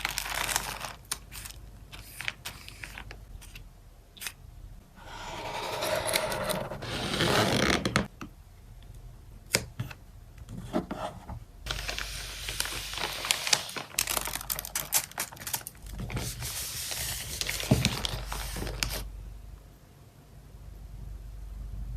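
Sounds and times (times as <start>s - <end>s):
packing materials rustling: 0.0s - 3.6s, 11.7s - 19.1s.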